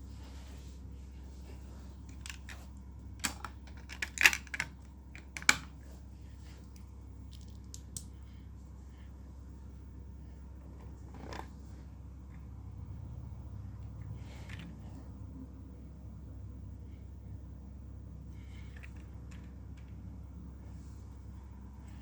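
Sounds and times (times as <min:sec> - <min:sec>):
low steady hum: 0:00.0 - 0:22.0
plastic bricks clicking: 0:03.2 - 0:05.7.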